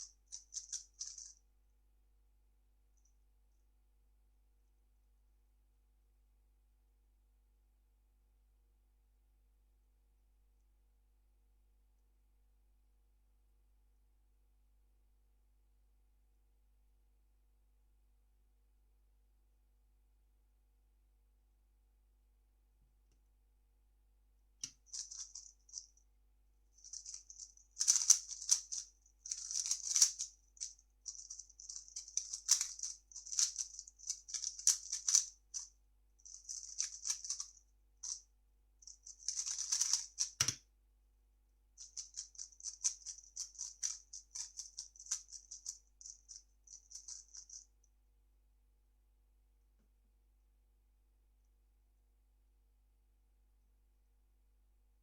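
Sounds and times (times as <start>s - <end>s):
plastic puzzle cube clicking: 27.8s - 30.3s, 31.1s - 35.3s, 36.3s - 37.5s, 39.1s - 40.6s.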